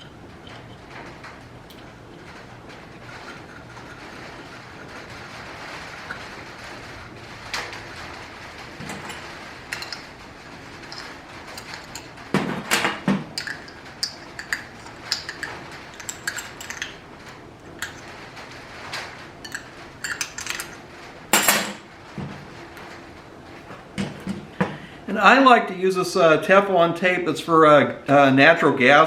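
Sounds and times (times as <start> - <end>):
small metal parts clinking: 8.8 - 10.2, 10.8 - 17.0, 17.7 - 18.2, 19.4 - 21.8.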